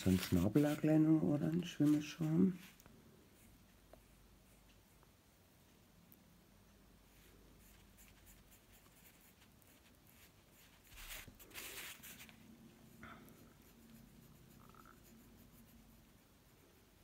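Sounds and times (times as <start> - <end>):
paintbrush scratching on wood: 0.0 - 2.8, 13.3 - 17.0
scratchy rustle: 0.0 - 2.9, 7.2 - 12.5.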